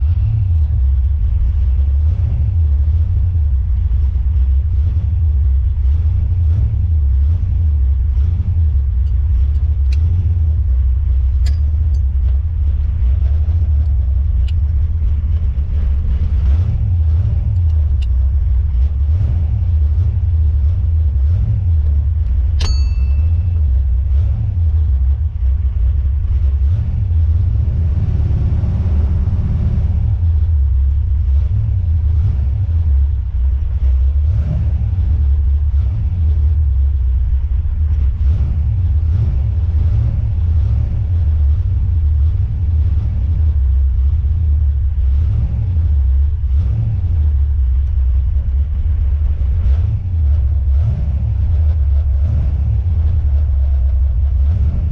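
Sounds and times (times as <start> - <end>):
car road and engine noise: 0.0 - 54.9
sharp clicks from car: 9.0 - 10.2, 13.8 - 15.5, 17.5 - 18.3.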